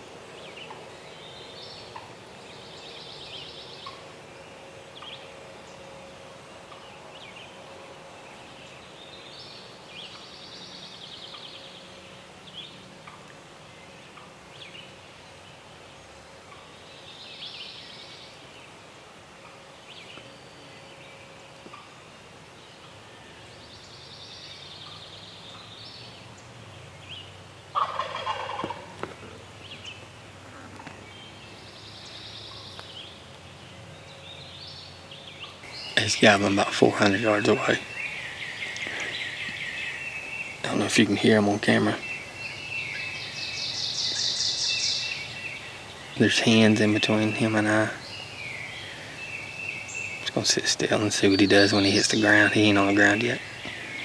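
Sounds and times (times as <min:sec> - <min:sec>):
distant turkey gobbling: 0:27.8 - 0:29.3, 0:35.6 - 0:54.0.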